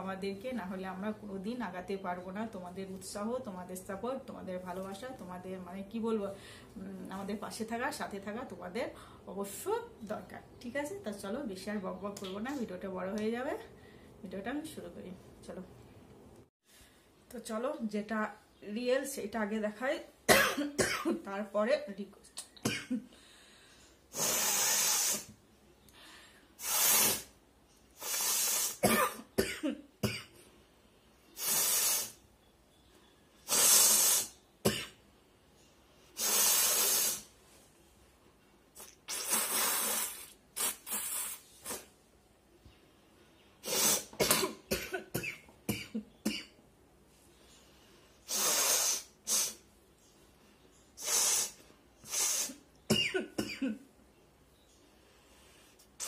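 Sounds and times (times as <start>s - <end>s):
person blowing nose: 24.1s - 25.3s, 26.6s - 27.3s, 28.0s - 28.8s, 31.4s - 32.2s, 33.5s - 34.4s, 36.2s - 37.3s, 38.8s - 42.0s, 43.6s - 44.2s, 48.2s - 49.6s, 51.0s - 52.6s.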